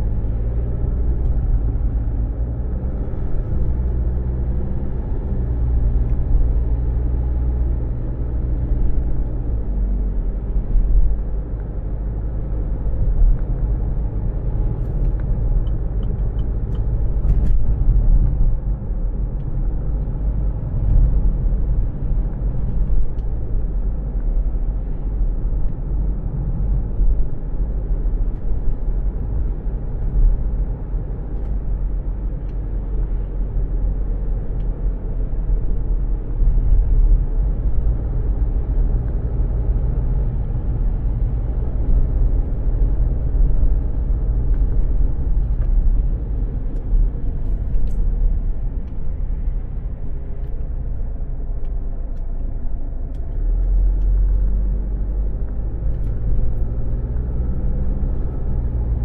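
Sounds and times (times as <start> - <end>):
car cabin engine and road noise: 0.0 - 59.0
light ticks: 51.6 - 54.8.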